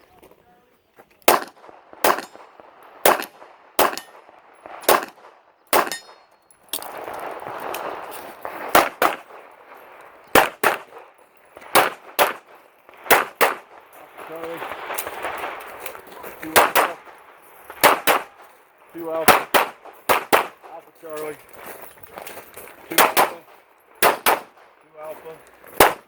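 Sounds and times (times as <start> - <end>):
handgun shots: 1.2 - 2.4, 3.0 - 4.2, 4.8 - 6.4, 10.4 - 11.0, 11.8 - 12.5, 13.1 - 13.6, 16.5 - 17.0, 17.8 - 18.4, 19.3 - 20.7, 22.9 - 24.6, 25.7 - 26.0.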